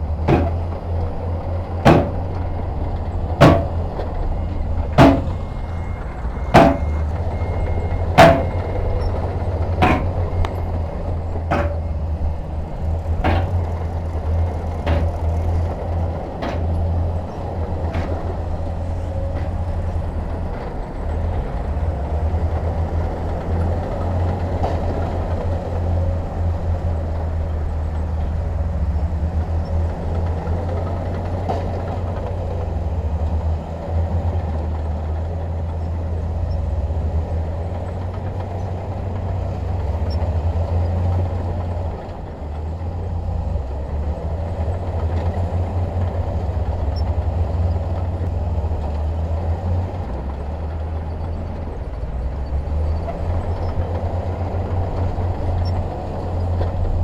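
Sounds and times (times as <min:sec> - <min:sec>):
heavy diesel engine droning: 0:00.0 - 0:57.0
faint knocks: 0:00.3 - 0:00.8, 0:01.9 - 0:02.5, 0:03.4 - 0:04.0, 0:05.0 - 0:05.6, 0:06.5 - 0:07.2, 0:08.2 - 0:08.7, 0:09.8 - 0:10.5, 0:11.5 - 0:11.9, 0:13.2 - 0:15.6.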